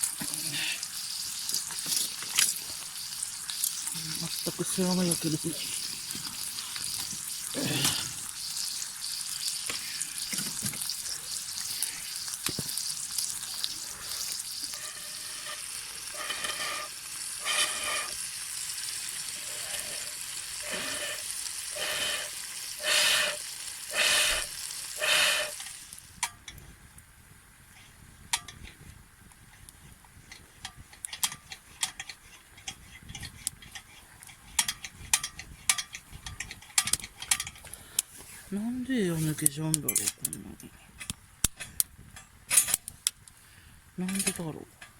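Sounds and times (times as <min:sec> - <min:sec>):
food sizzling in a pan: 0:00.0 - 0:26.2.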